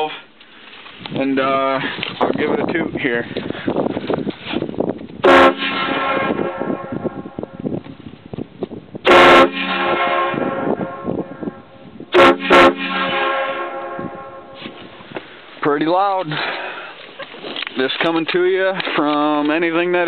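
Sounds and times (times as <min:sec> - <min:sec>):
train horn blasts: 0:05.2 - 0:07.6, 0:09.0 - 0:14.8.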